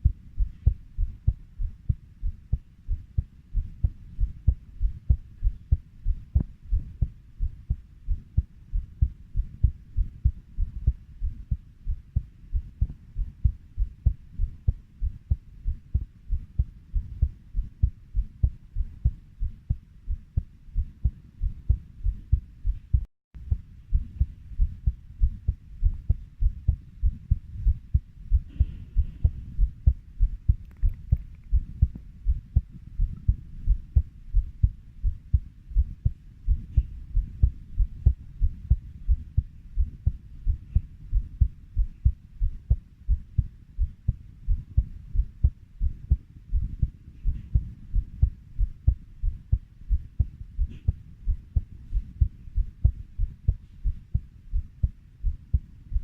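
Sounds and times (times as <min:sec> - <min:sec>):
human heartbeat: 0:00.0 - 0:56.0.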